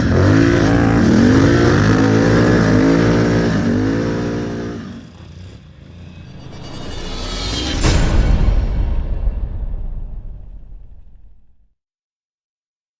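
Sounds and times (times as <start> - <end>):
atv engine revving: 0.0 - 5.7.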